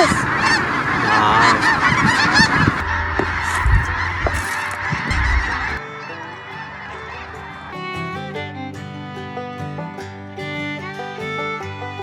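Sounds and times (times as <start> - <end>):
geese honking: 0.0 - 12.0
music: 2.8 - 12.0.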